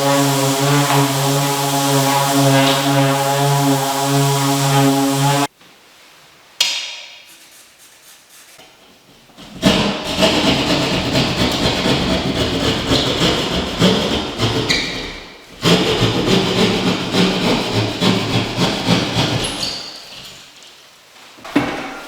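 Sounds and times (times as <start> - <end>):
power tool rattling and juddering: 0.0 - 5.5.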